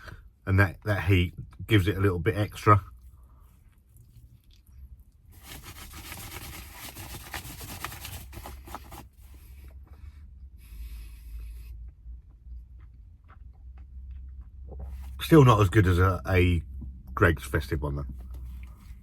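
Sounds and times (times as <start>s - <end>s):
rustling and scraping handling noise: 5.3s - 10.0s, 14.8s - 15.2s.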